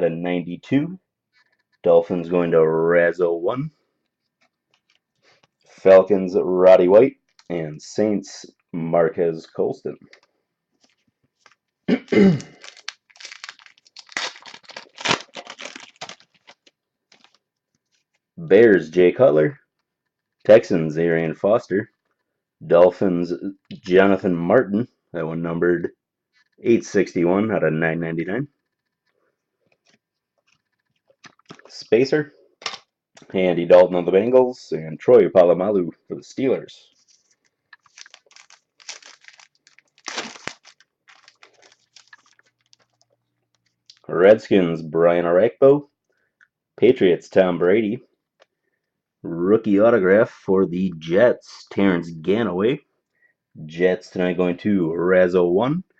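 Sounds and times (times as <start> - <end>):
card packaging crinkling and tearing: 10.8 - 18.2, 36.9 - 43.2.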